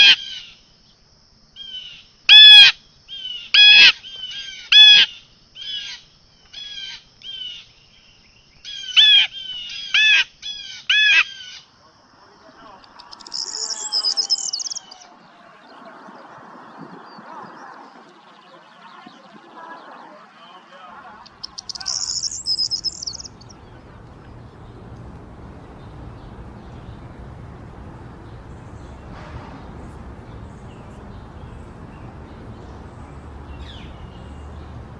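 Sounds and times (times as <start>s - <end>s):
bird calling: 12.4s - 34.9s
low outdoor rumble: 12.5s - 34.9s.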